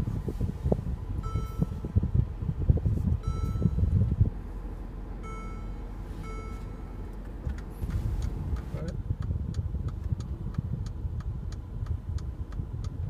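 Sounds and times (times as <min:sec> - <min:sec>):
low road rumble inside car: 0:00.0 - 0:13.0
electronic cabin chime beeps: 0:01.2 - 0:02.0, 0:03.2 - 0:04.0, 0:05.2 - 0:07.1.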